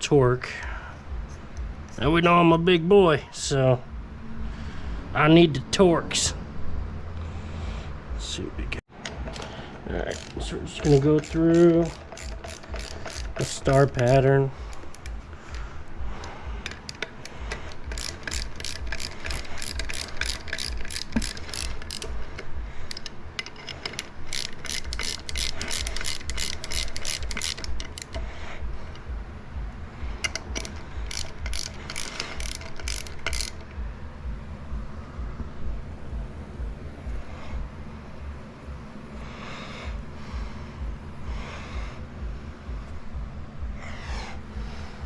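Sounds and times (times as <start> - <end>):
ratchet wrench clicking: 9.0 - 15.6, 16.2 - 29.1, 30.1 - 33.8.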